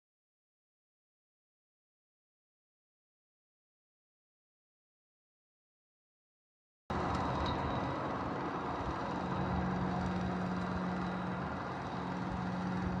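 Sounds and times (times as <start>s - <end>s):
heavy farm machinery running: 6.9s - 13.0s.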